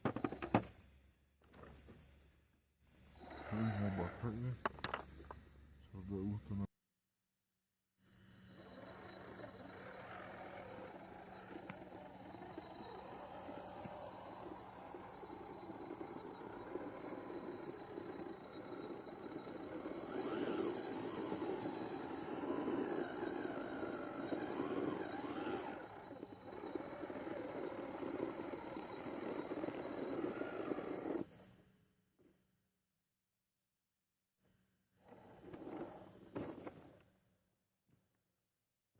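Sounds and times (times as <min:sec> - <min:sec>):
constant high-pitched tone: 0:00.0 - 0:06.7, 0:08.0 - 0:32.9, 0:34.4 - 0:38.4
electric motor whining: 0:03.0 - 0:04.5, 0:08.3 - 0:31.4.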